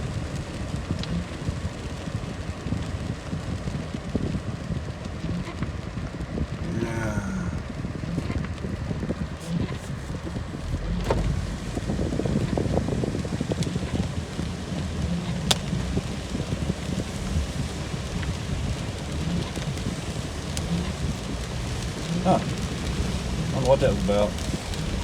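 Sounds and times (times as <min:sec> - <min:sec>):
rain falling: 0:00.0 - 0:25.0
raindrops ticking close by: 0:00.0 - 0:25.0.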